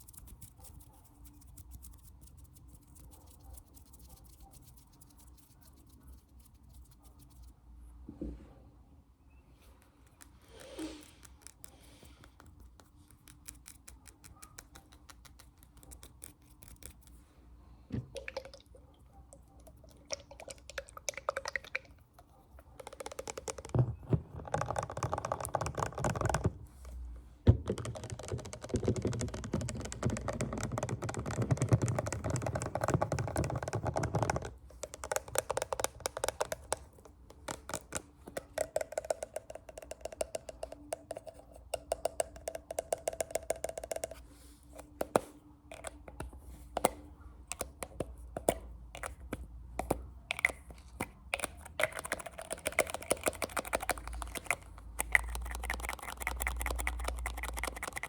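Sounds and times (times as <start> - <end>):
fast finger tapping: 22.7 - 26.6, 27.5 - 44.2, 47.5 - 58.0.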